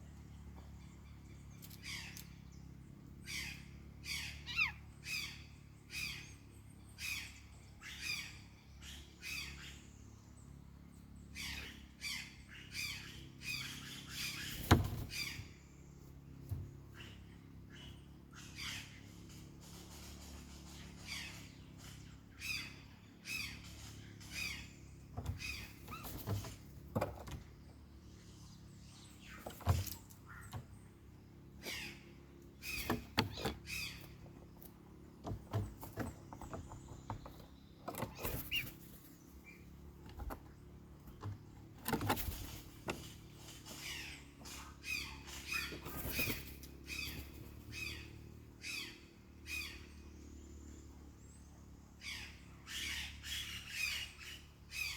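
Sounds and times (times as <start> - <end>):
low background hum: 0.0 - 54.9
birds squawking: 3.2 - 6.4, 11.3 - 16.0, 16.7 - 19.4, 20.8 - 26.6, 28.2 - 40.4, 41.2 - 50.2, 52.0 - 54.9.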